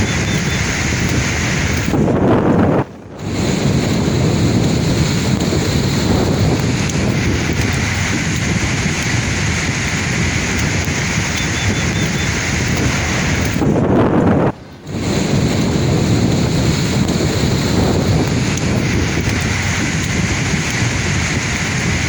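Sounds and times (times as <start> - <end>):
sea waves washing ashore: 0.0 - 22.0.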